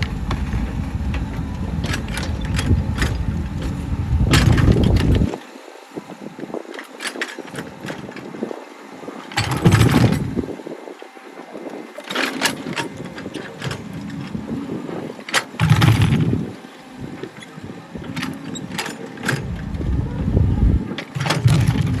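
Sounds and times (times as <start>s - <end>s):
excavator motor surging: 0.0s - 5.4s, 9.3s - 11.8s, 12.4s - 22.0s
clicks and scraping: 18.2s - 22.0s.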